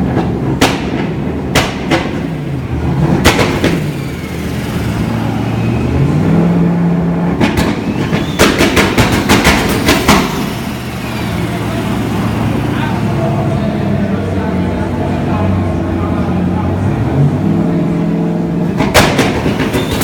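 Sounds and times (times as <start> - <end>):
exhaust pops and bangs: 0.0 - 5.8, 7.2 - 11.4, 18.7 - 20.0
car engine revving: 0.0 - 20.0.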